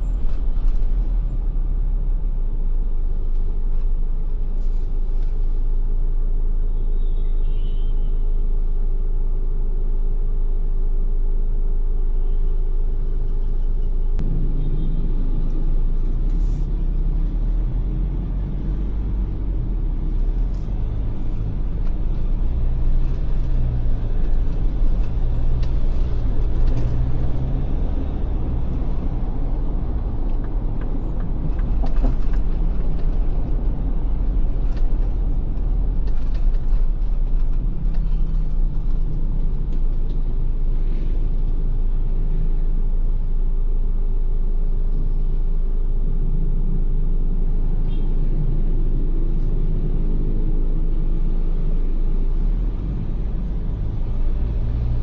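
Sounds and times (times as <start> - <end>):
engine and road noise rumble: 0.0 - 55.0.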